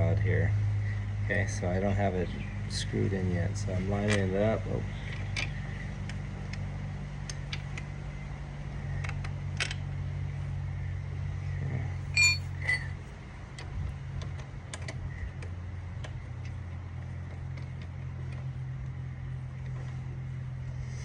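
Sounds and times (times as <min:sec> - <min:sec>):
steady low hum: 0:10.3 - 0:13.4
metallic clink ringing: 0:12.2 - 0:12.9.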